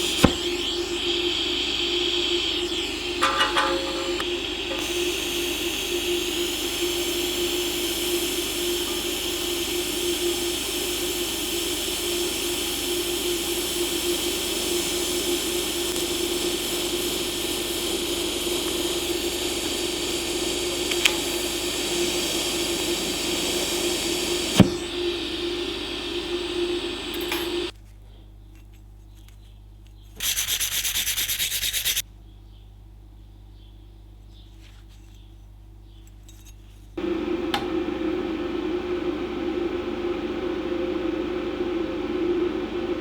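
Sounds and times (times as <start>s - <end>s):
harsh hiss burst: 0.0s - 27.7s
welding arc hissing buzz: 0.0s - 27.8s.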